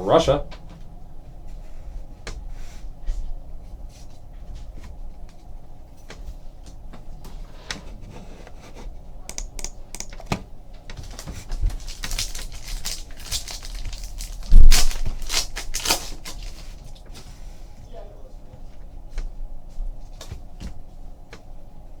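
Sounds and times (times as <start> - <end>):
cards and foil wrappers rustling: 9.4 - 17.4.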